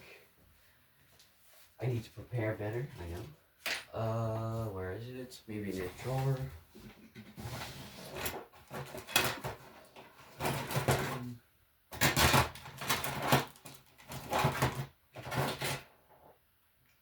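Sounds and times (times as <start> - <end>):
objects clattering in a drawer: 7.2 - 16.0.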